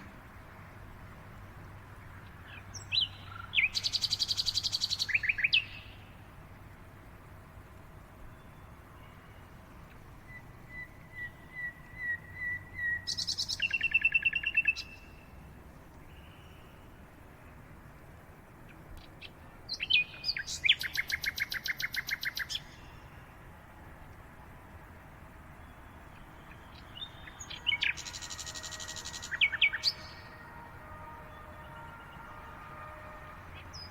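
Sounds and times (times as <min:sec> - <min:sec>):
faint background hiss: 0:00.0 - 0:33.9
bird singing trills: 0:02.4 - 0:06.2, 0:10.2 - 0:15.3, 0:18.7 - 0:23.2, 0:25.6 - 0:30.5.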